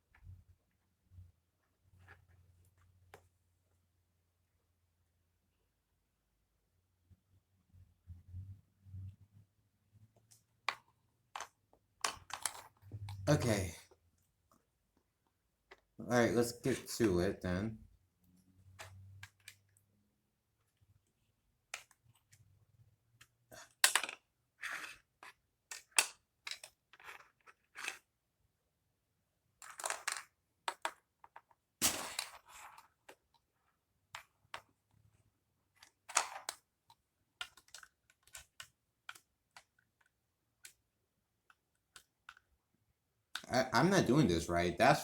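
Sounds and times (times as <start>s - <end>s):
plastic pieces clicking: 35.8s - 42.6s.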